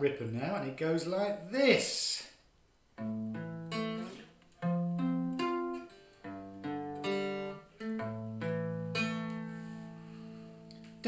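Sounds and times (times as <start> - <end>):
guitar and ukulele chords: 3.0 - 11.0.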